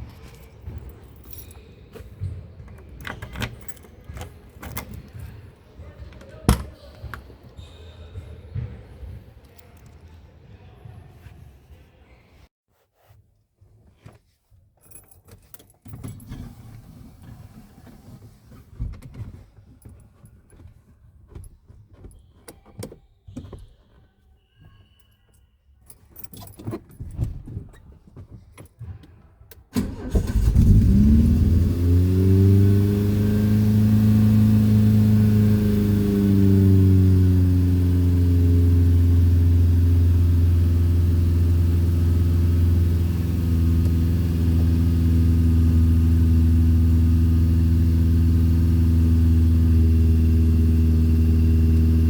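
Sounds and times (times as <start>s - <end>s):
handling clicks and rustles: 0.0s - 7.5s
keys jangling: 2.8s - 5.2s
car engine starting and idling: 29.7s - 52.0s.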